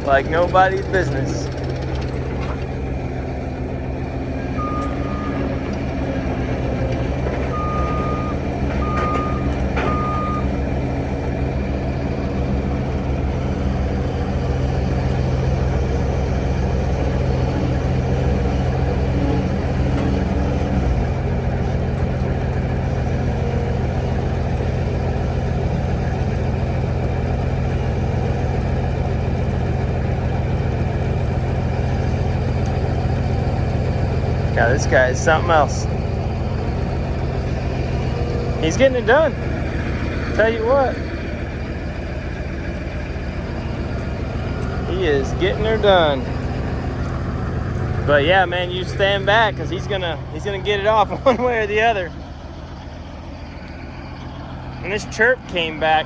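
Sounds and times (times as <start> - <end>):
diesel engine idling: 0.0 - 56.0
backup alarm beeping: 3.3 - 6.7, 7.5 - 11.3.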